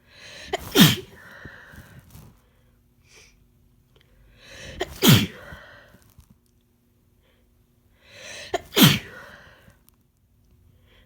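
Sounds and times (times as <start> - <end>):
person sneezing: 0.4 - 1.3, 4.6 - 5.7, 8.2 - 9.4.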